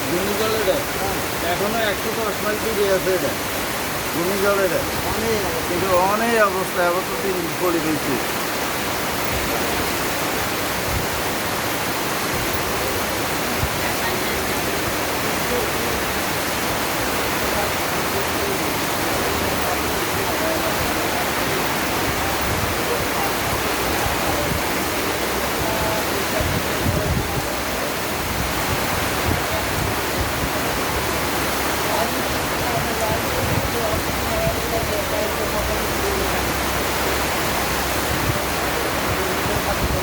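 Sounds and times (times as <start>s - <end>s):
heavy rain pouring: 0.0s - 40.0s.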